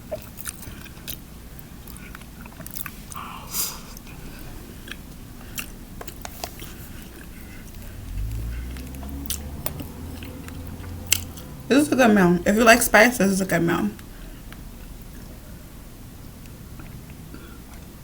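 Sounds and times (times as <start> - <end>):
person chewing food: 0.0 - 11.6, 16.4 - 18.0
low steady hum: 0.0 - 18.0.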